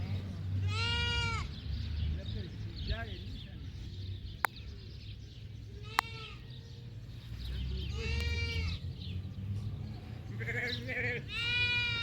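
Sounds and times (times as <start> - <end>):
livestock bleating: 0.6 - 1.5, 5.8 - 6.5, 7.9 - 8.8, 10.3 - 12.0.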